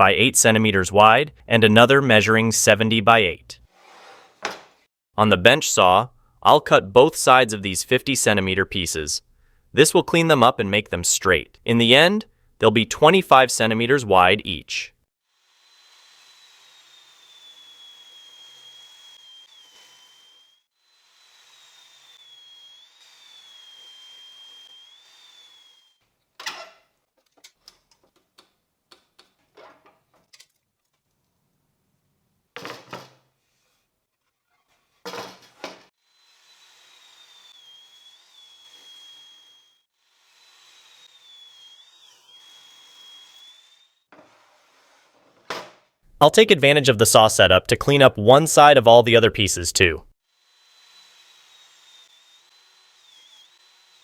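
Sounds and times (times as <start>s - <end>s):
table saw ripping wood: 15.3s - 26.8s, 34.8s - 45.9s.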